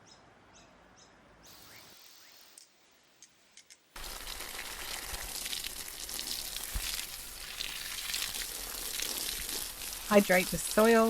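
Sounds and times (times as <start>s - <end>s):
water poured onto soil: 4.0s - 11.0s.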